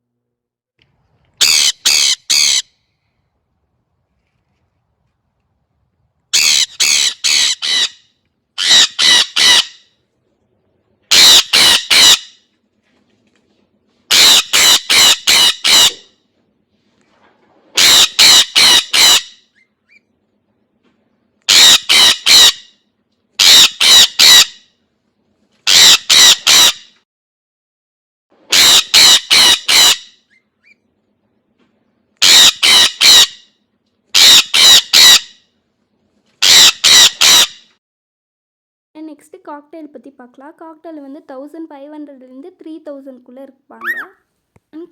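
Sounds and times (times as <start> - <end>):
parrot screeching: 1.4 - 2.8, 6.3 - 10.0, 11.1 - 12.4, 14.1 - 16.1, 17.8 - 20.0, 21.5 - 22.8, 23.4 - 24.7, 25.6 - 27.0, 28.5 - 30.8, 32.2 - 33.5, 34.1 - 35.4, 36.4 - 37.7, 43.8 - 44.2.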